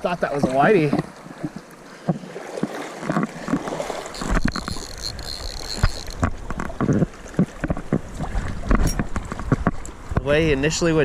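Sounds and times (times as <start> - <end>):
water splashing: 0.0 - 10.2
wind rumble on microphone: 4.2 - 11.0.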